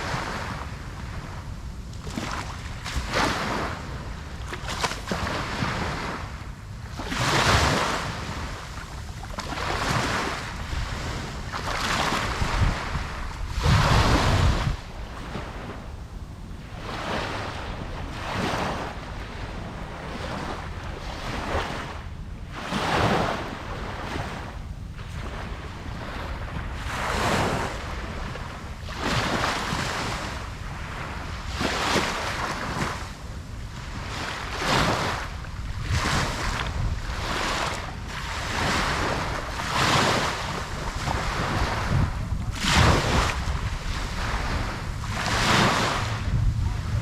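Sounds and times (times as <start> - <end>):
ocean waves breaking on beach: 0.0 - 47.0
wind on microphone: 0.0 - 47.0.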